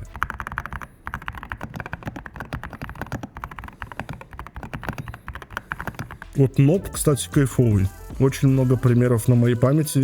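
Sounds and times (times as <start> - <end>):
fast typing on mechanical keyboard: 0.0 - 6.4.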